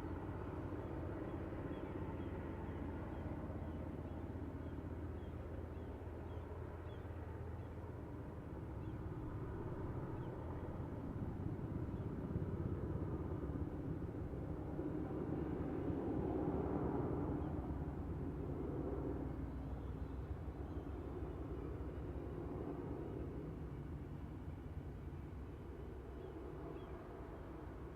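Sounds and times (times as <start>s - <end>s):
low outdoor rumble: 8.0s - 15.9s.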